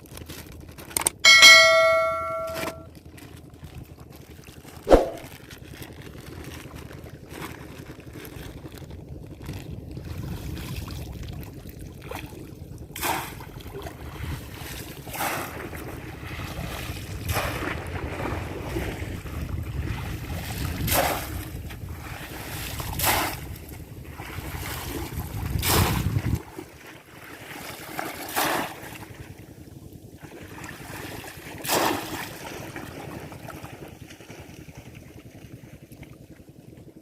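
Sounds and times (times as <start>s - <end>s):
wind rumbling on microphone: 8.1s - 26.7s.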